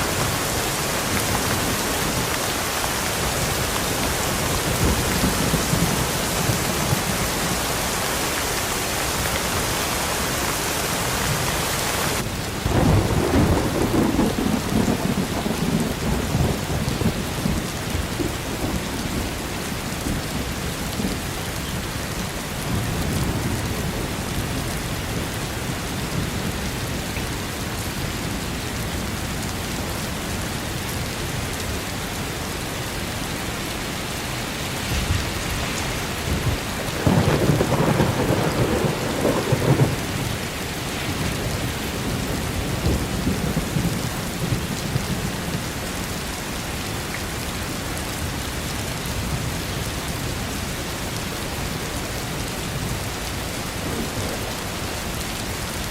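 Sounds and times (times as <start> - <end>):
thunder rumbling: 0.0 - 9.6, 11.0 - 27.1, 34.0 - 45.9
steady rain falling: 0.0 - 55.9.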